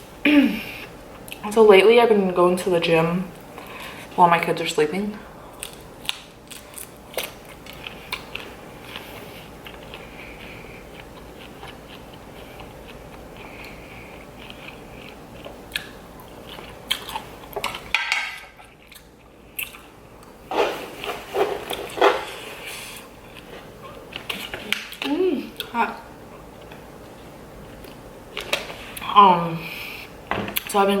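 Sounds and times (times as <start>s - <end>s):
chewing and crunching food: 5.4s - 29.2s.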